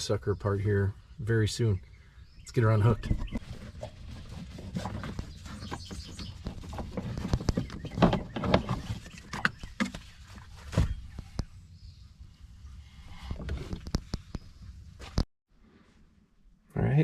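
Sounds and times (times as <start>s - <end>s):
knocks and clanks of handling engine: 3.2s - 10.1s.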